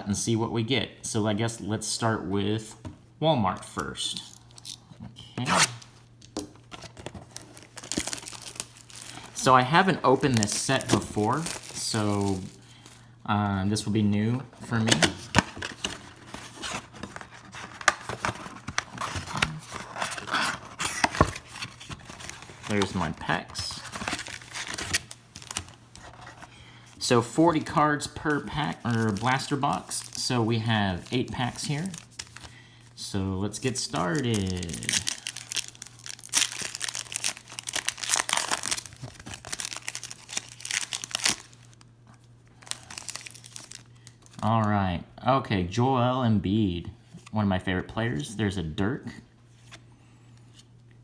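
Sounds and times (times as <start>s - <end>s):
cardboard tearing and rustling: 6.6s - 12.6s, 14.6s - 26.5s, 27.4s - 32.5s, 33.5s - 41.8s, 42.6s - 44.4s.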